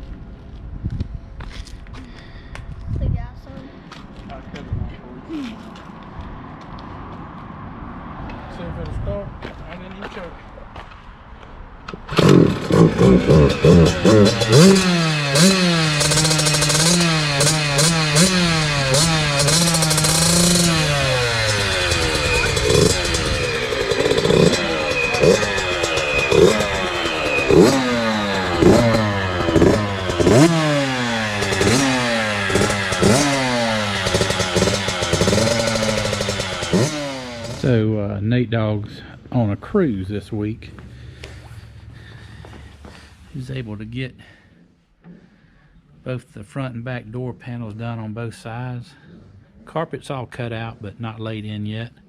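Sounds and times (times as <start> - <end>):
small engine revving: 12.0 - 37.8.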